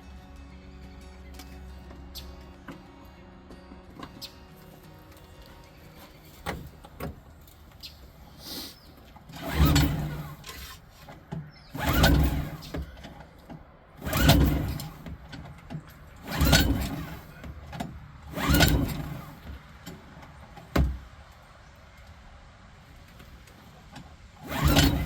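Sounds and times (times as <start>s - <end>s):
outboard engine turning over: 9.2s - 10.8s, 11.4s - 13.2s, 14.0s - 20.2s, 24.4s - 25.0s
recoil rope whirring: 9.3s - 10.8s, 18.2s - 19.6s, 24.4s - 25.0s.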